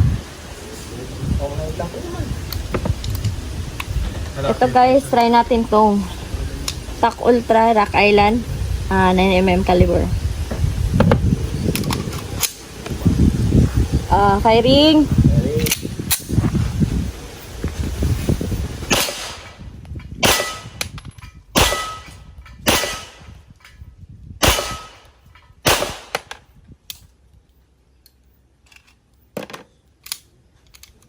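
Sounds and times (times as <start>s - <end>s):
faint gunshots: 18.9s - 19.6s, 24.4s - 25.0s, 25.7s - 26.3s
pistol shots: 18.9s - 19.6s, 20.2s - 20.8s, 21.6s - 23.3s, 24.4s - 26.3s.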